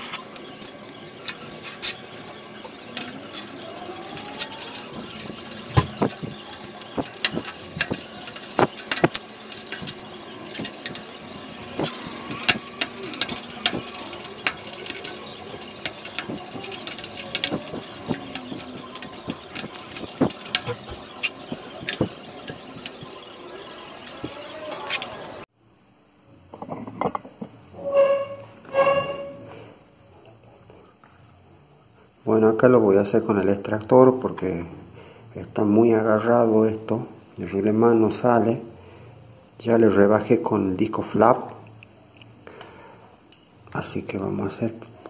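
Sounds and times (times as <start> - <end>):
short high squeaks: 0.0 - 25.5, 27.7 - 29.8.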